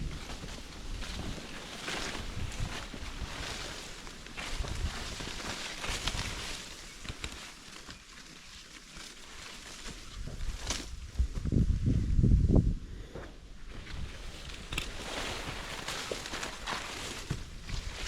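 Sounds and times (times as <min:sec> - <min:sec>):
wind buffeting microphone: 0:00.0 - 0:03.6, 0:10.0 - 0:15.6
rustling: 0:00.0 - 0:11.5, 0:13.5 - 0:18.0
footsteps on trail: 0:00.0 - 0:11.9, 0:13.0 - 0:18.0.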